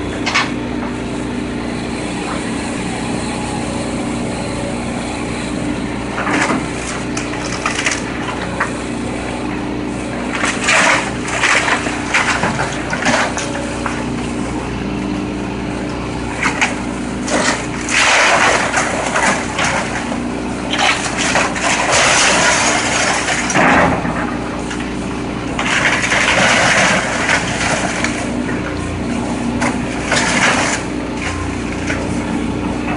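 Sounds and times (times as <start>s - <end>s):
diesel engine running: 0.0s - 32.9s
falling debris: 20.7s - 24.2s.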